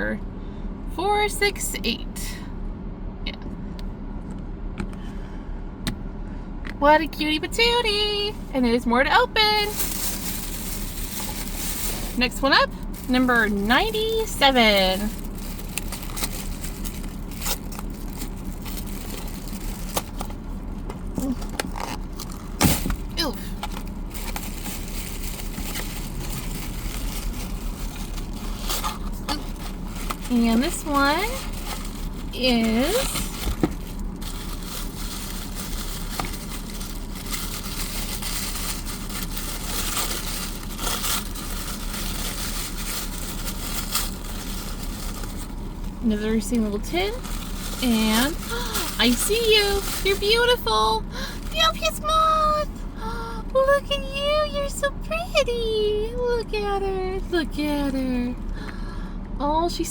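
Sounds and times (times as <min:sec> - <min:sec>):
car engine idling hum: 0:00.0 - 0:59.9
packaging crinkling and tearing: 0:09.6 - 0:46.0, 0:46.7 - 0:50.6
packaging being torn open: 0:15.0 - 0:20.4.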